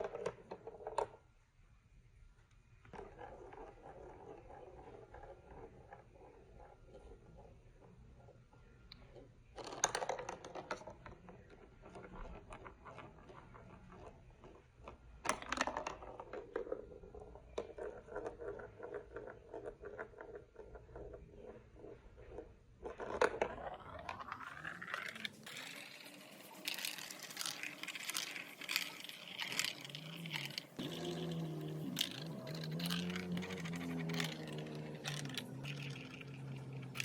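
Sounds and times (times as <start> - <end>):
marbles rolling and clattering: 9.6 - 37.0
rising whir: 28.6 - 37.0.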